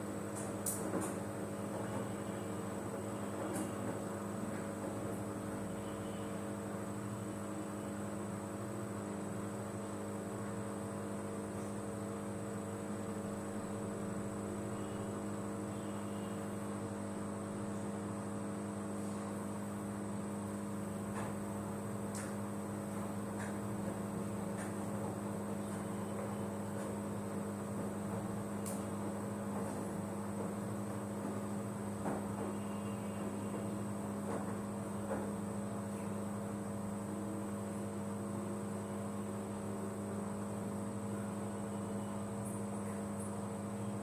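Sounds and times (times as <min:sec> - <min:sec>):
washing machine humming: 0:00.0 - 0:44.0
faint high whine: 0:05.6 - 0:08.0, 0:14.4 - 0:16.6, 0:32.5 - 0:33.8.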